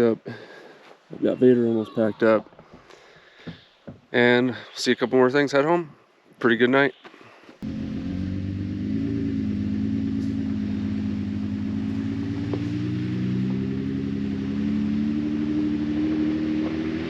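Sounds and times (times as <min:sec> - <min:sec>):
vehicle engine running: 0:07.6 - 0:17.0.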